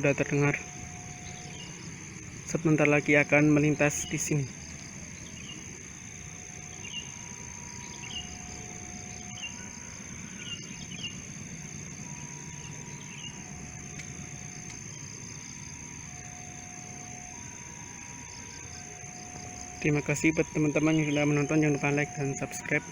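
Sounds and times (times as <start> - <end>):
birds chirping: 0.0 - 5.8, 6.6 - 13.6, 18.2 - 22.9
distant diesel train rumble: 0.0 - 22.9
high insect drone: 0.0 - 22.9.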